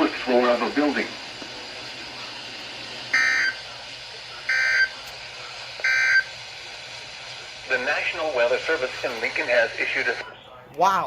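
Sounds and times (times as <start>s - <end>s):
radio hiss: 0.0s - 10.6s
digital data tone bursts: 3.1s - 3.6s, 4.5s - 5.0s, 5.8s - 6.3s.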